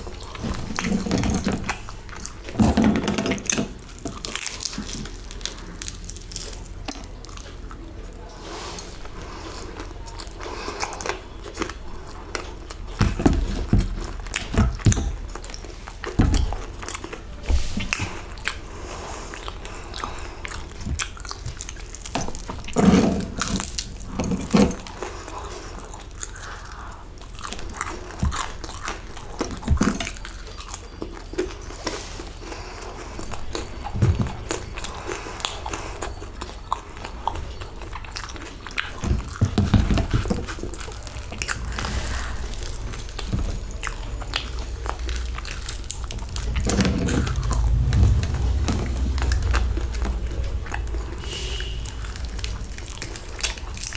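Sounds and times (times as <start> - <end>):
crunchy pastry chewing: 3.7 - 46.6.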